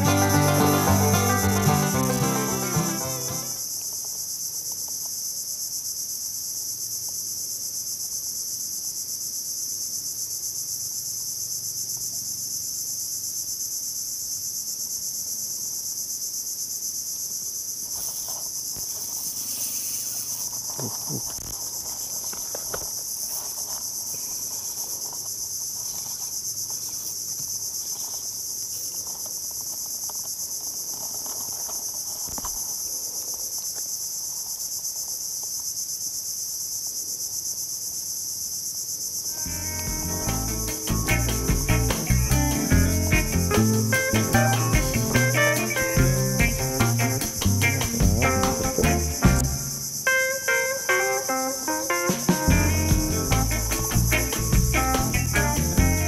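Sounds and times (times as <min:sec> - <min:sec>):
crickets chirping: 0:00.0 - 0:56.0
faint rustles: 0:17.8 - 0:34.6.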